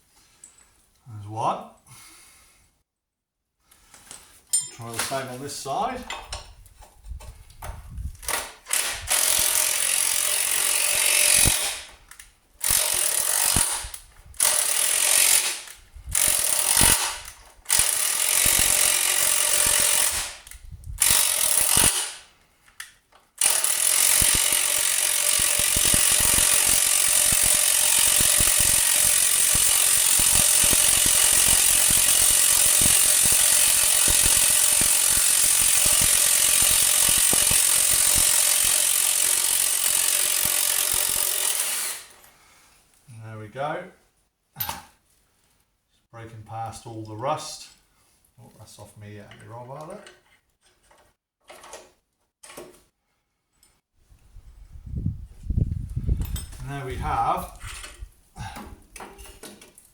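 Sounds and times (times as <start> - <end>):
air impact wrench hammering: 8.3 - 12.0, 12.6 - 22.2, 23.4 - 42.1.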